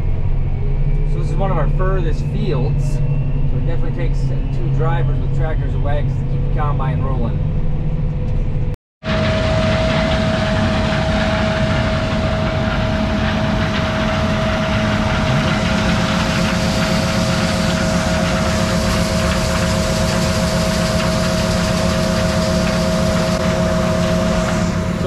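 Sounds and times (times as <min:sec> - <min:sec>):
heavy machinery engine drone: 0:00.0 - 0:25.0
steady machine whine: 0:00.0 - 0:25.0.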